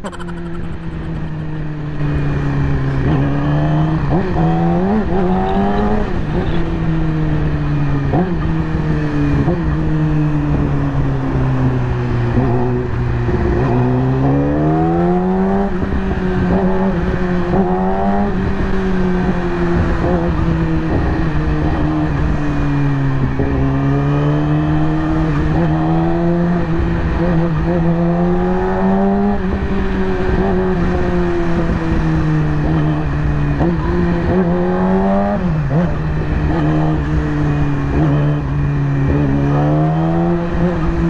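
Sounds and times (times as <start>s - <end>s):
motorcycle engine running: 0.0s - 4.5s.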